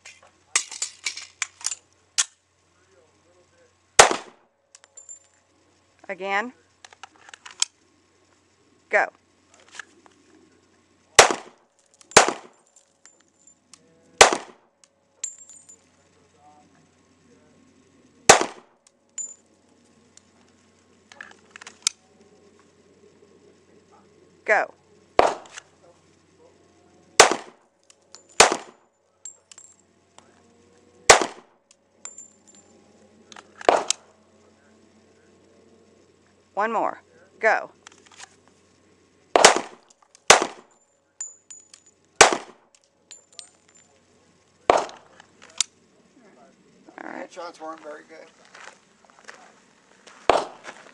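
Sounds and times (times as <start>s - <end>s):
pistol shots: 4.0s - 4.4s, 11.2s - 12.6s, 14.2s - 14.7s, 18.3s - 18.7s, 25.2s - 25.7s, 27.2s - 27.6s, 28.3s - 28.8s, 31.1s - 31.5s, 33.4s - 34.1s, 39.3s - 40.8s, 42.2s - 42.6s, 44.6s - 45.2s, 50.2s - 50.7s.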